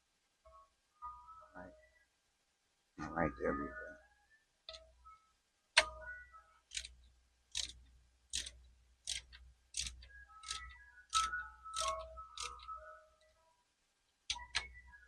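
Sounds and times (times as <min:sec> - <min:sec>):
ratchet wrench clicking: 0:06.7 - 0:06.9, 0:07.5 - 0:12.6.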